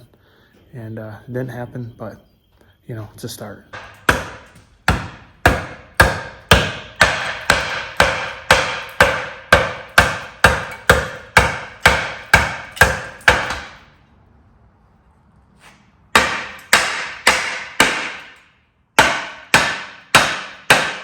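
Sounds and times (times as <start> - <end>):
hammer striking metal: 3.7 - 13.9, 16.1 - 21.0.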